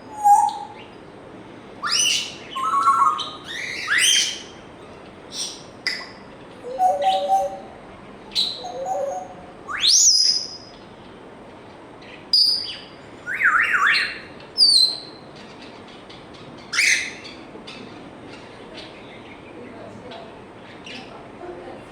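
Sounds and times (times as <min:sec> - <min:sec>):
parrot calling: 0:00.0 - 0:01.0, 0:01.8 - 0:10.7, 0:12.4 - 0:15.6, 0:16.6 - 0:18.0.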